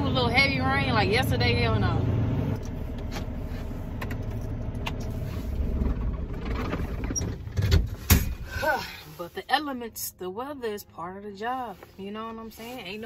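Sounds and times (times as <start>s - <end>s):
truck engine rumble inside cab: 0.0s - 9.9s.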